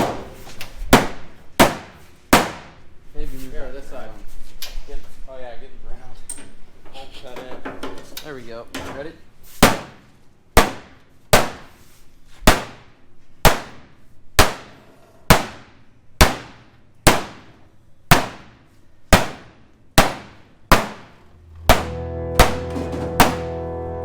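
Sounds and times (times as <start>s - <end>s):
hammer blows on metal: 20.8s - 24.0s
music: 21.6s - 24.0s.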